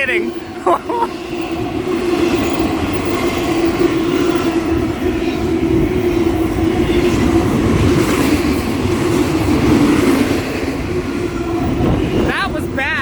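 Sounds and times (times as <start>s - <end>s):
constant hum: 0.0s - 13.0s
train wheels rumbling on rail: 0.0s - 13.0s
wheels clacking: 0.0s - 13.0s.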